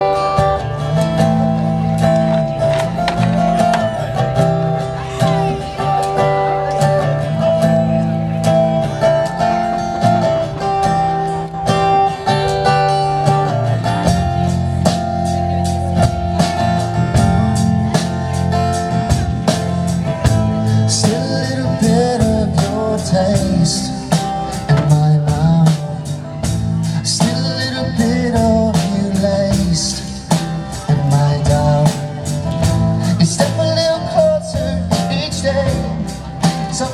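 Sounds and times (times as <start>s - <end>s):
band playing guitar-led song: 0.0s - 36.9s
drums steady beat: 0.0s - 36.9s
person singing: 11.6s - 36.9s.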